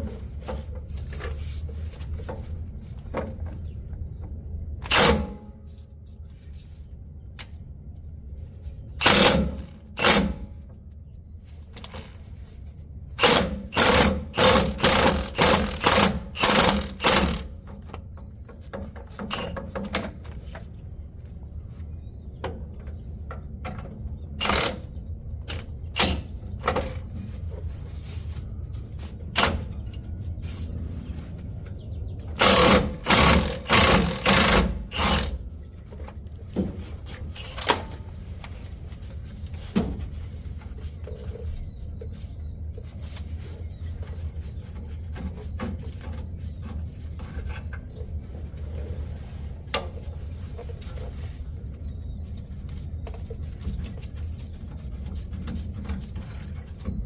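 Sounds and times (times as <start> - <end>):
metal tool bursts: 4.8 - 5.5, 9.0 - 10.6, 13.2 - 17.5, 19.3 - 20.4, 24.4 - 24.8, 25.5 - 27.0, 32.3 - 35.4, 37.1 - 38.0.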